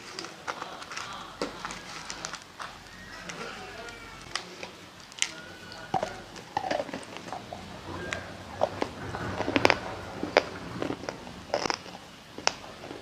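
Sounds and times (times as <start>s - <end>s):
wet chewing mouth sounds: 5.0s - 13.0s.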